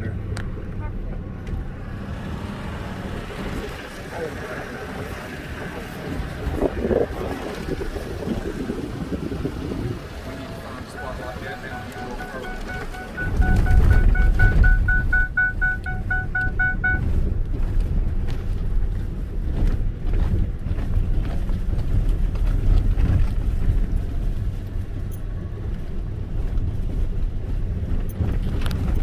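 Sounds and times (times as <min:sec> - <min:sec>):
truck engine and tyres rumbling: 0:00.0 - 0:11.8, 0:12.4 - 0:29.0
rapid warning chime beeps: 0:11.0 - 0:17.0.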